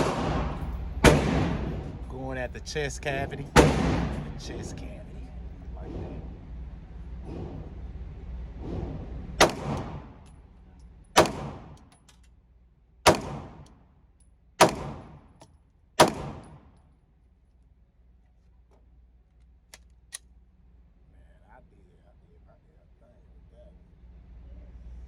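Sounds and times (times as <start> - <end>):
pistol shots with echo: 0.0 - 2.0, 3.6 - 4.3, 9.4 - 10.2, 11.2 - 11.8, 13.0 - 13.7, 14.6 - 15.3, 16.0 - 16.7.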